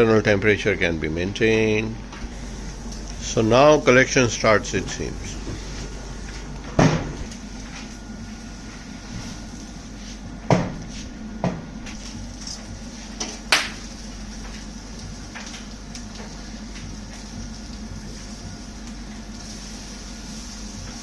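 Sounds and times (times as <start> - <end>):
steady hum: 0.0 - 21.0
knocks from grill and tools: 6.7 - 7.2, 10.5 - 10.8.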